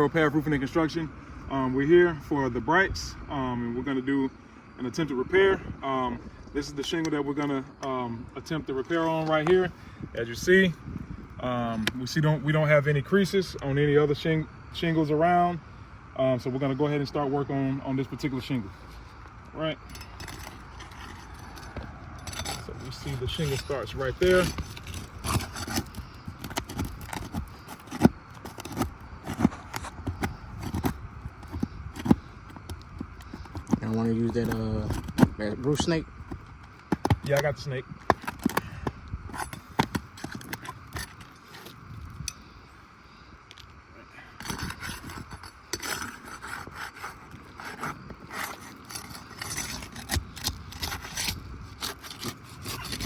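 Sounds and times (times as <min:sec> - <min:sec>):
clicks and scrapes on roof shingles: 0:19.8 - 0:42.4, 0:44.3 - 0:53.0.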